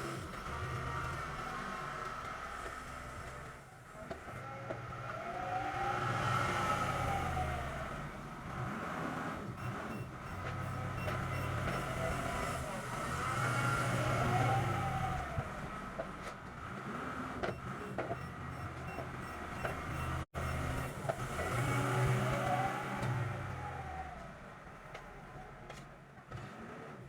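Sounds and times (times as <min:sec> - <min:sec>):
engine revving: 0:05.5 - 0:15.6, 0:16.7 - 0:24.2
clicks: 0:09.6 - 0:12.7, 0:17.4 - 0:21.2.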